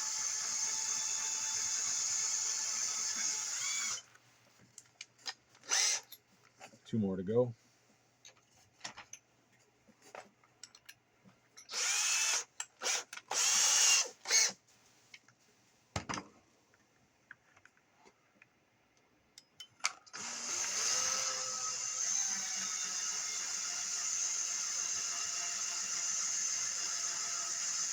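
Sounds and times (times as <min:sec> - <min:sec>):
power drill boring into plastic: 0:00.0 - 0:04.1, 0:05.6 - 0:06.1, 0:11.7 - 0:14.6, 0:20.1 - 0:27.9.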